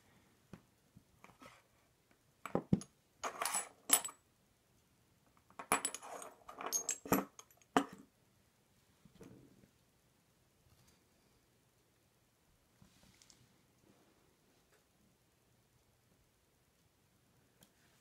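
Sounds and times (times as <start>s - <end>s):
small metal parts clinking: 3.2s - 4.2s, 5.5s - 7.8s.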